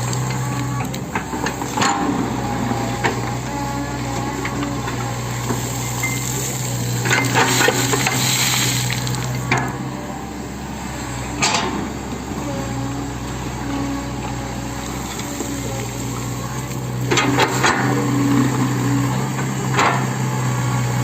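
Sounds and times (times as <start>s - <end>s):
excavator diesel engine running: 0.0s - 21.0s
metallic clanks from excavator bucket: 11.4s - 11.9s.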